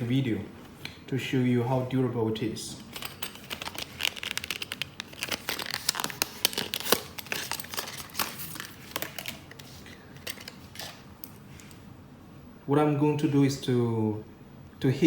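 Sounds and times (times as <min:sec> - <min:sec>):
crinkly crackles and clicks: 0:02.9 - 0:11.8.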